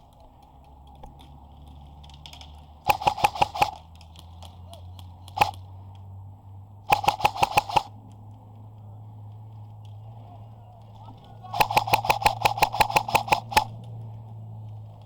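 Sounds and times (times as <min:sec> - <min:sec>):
airsoft gun firing: 0:02.8 - 0:04.6, 0:05.3 - 0:05.8, 0:06.9 - 0:08.0, 0:11.4 - 0:13.8.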